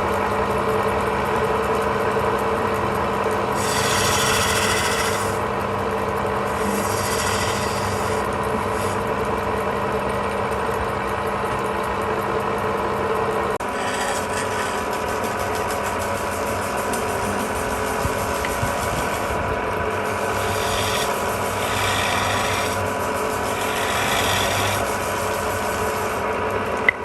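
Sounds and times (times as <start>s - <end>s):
wood lathe motor hum: 0.0s - 27.0s
turning tool scraping wood: 3.2s - 9.8s, 13.5s - 27.0s.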